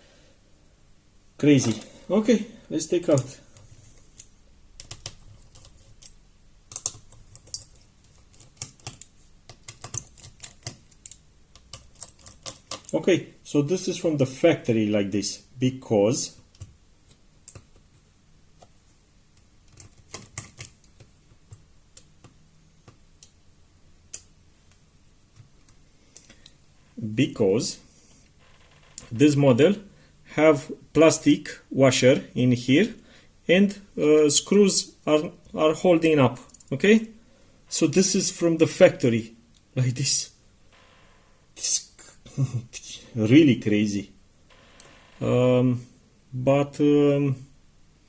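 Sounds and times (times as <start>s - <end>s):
small parts and tools clicking: 3.2s - 13.0s.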